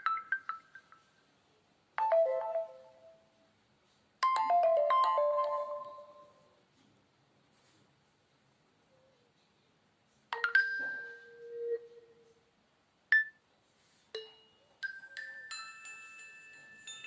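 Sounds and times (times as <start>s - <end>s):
bell-like mallet notes: 4.2s - 6.4s.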